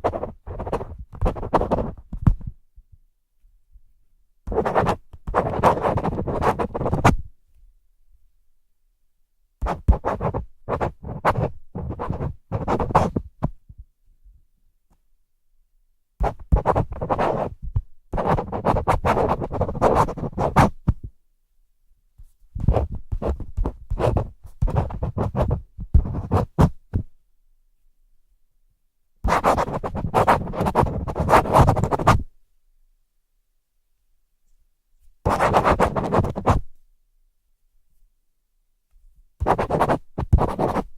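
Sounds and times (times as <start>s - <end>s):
pen writing on paper: 0.0s - 2.4s, 4.5s - 7.1s, 9.6s - 13.2s, 16.2s - 17.6s, 18.2s - 20.9s, 22.6s - 26.8s, 29.3s - 32.2s, 35.3s - 36.6s, 39.4s - 40.9s.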